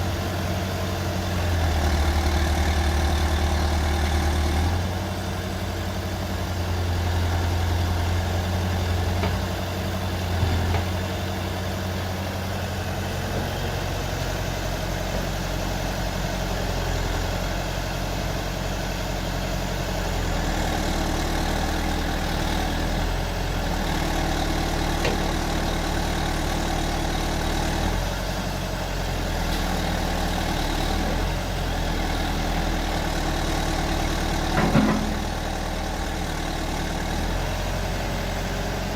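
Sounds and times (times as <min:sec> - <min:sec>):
diesel engine idling: 0:00.0 - 0:38.9.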